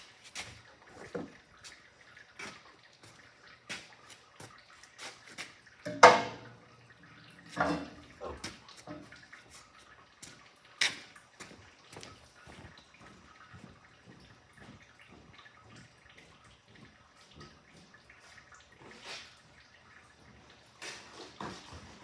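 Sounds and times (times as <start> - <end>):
oil dripping into a bucket: 0.0 - 22.0
splashes or knocks: 5.4 - 6.7.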